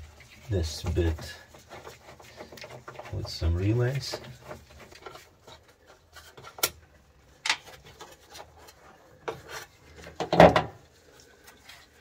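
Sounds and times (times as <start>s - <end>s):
plastic parts scraping: 0.1s - 6.8s.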